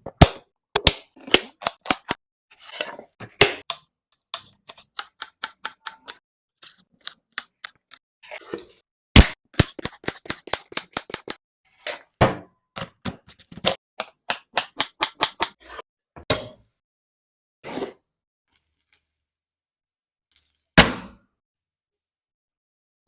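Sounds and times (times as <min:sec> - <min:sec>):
kitchen utensils clicking: 0:04.7 - 0:06.2.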